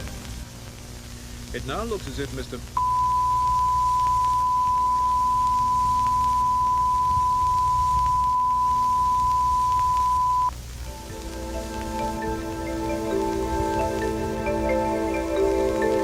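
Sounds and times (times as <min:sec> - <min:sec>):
low hum: 0:00.0 - 0:01.6, 0:02.6 - 0:16.0
steady sine test tone: 0:02.7 - 0:16.0
soft music with mallet notes: 0:10.9 - 0:16.0.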